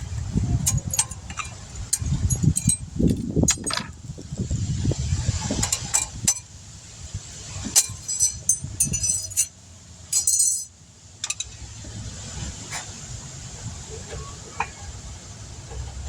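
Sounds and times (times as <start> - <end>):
metal tools clinking: 0.6 - 4.0, 7.6 - 11.6
short ringing rattles: 0.6 - 4.0, 7.8 - 11.6.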